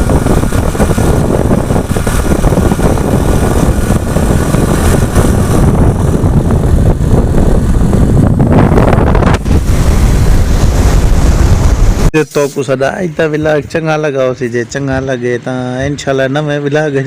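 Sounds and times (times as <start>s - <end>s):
vehicle engine running: 0.0s - 12.1s
wind on microphone: 0.0s - 12.2s.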